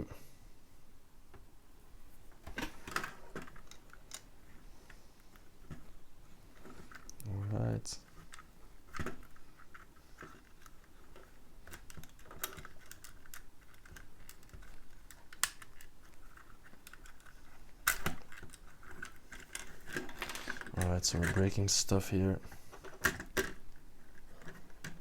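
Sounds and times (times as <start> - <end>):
plastic bricks clicking: 8.1 - 21.7.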